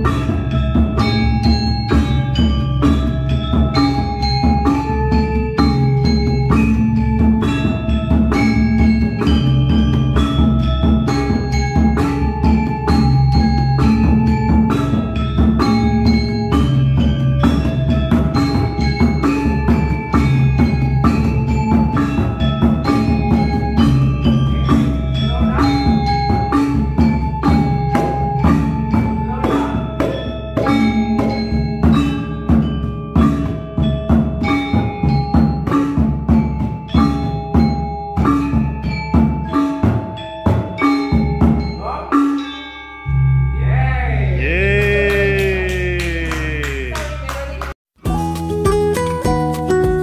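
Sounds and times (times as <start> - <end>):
metallophone notes: 0.0 - 44.4
drum tones: 44.4 - 50.0.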